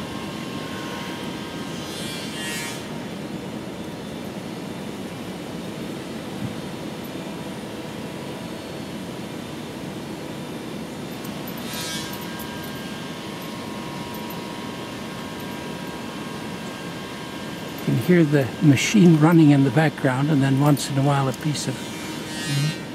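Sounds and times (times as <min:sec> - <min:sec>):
faint steady whine: 0:00.0 - 0:22.9
woodworking planer running: 0:14.6 - 0:22.9
high rasp of wood being planed: 0:21.6 - 0:22.9.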